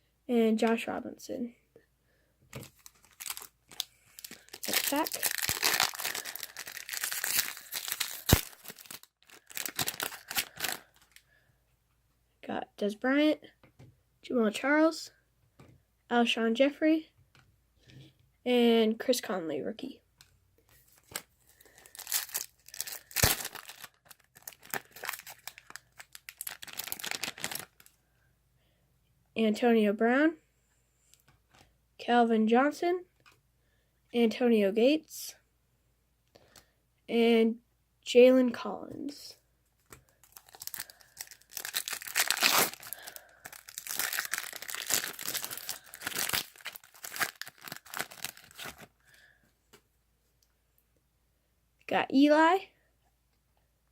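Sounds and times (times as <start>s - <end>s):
foil wrapper crinkling: 2.6s - 11.2s, 21.0s - 28.0s, 40.1s - 48.9s
wrapper tearing snap: 2.8s - 10.9s, 22.0s - 27.8s, 40.3s - 48.9s.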